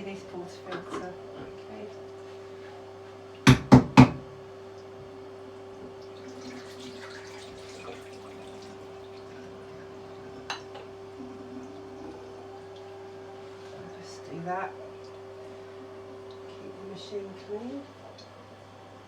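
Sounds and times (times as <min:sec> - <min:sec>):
low machine hum: 0:00.0 - 0:19.0
portafilter knocking: 0:03.5 - 0:04.4
water trickling: 0:05.5 - 0:16.6.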